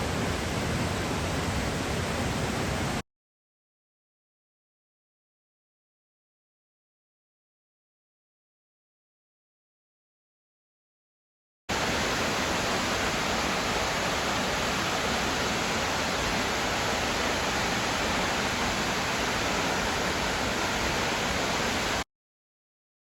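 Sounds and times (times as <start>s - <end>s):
waterfall rushing: 11.7s - 22.0s.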